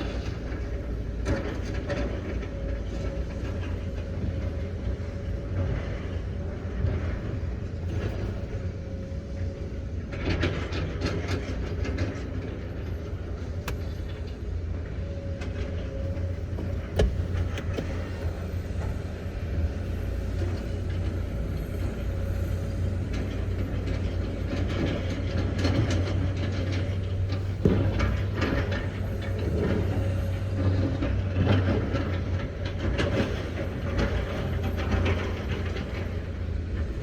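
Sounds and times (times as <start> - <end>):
excavator diesel engine running: 0.0 - 37.0
metallic clatter of tracks: 10.1 - 37.0
hydraulic whine: 12.4 - 36.5.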